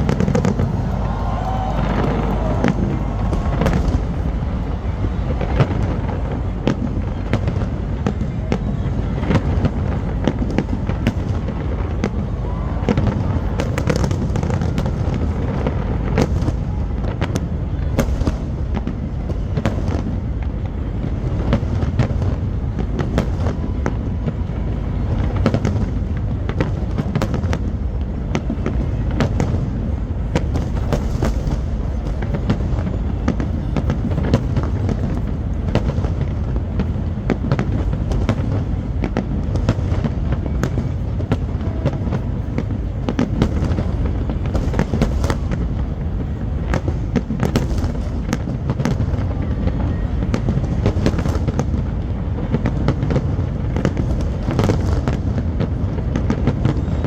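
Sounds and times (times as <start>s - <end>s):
fireworks booming: 0.0s - 57.0s
fireworks cracking and crackling: 0.0s - 57.0s.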